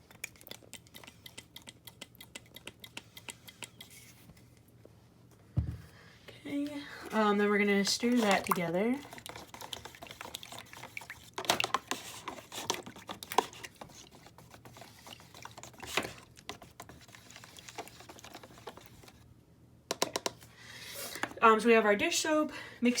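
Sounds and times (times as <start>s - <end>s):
liquid sloshing: 7.2s - 19.2s.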